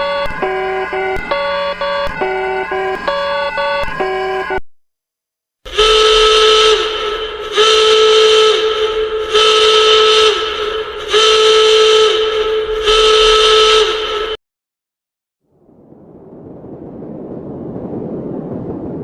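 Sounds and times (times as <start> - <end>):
horn-like alarm blasts: 0.0 - 4.6, 5.7 - 14.4.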